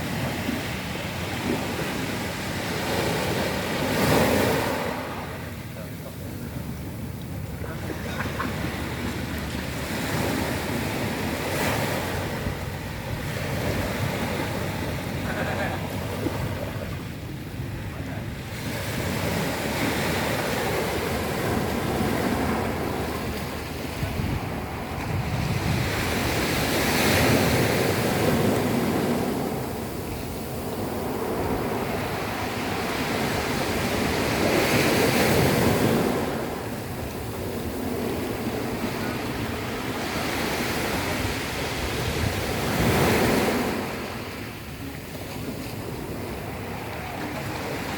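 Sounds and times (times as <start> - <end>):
waves washing over pebbles: 0.0 - 5.5
waves washing on pebble beach: 0.0 - 5.7, 7.7 - 47.9.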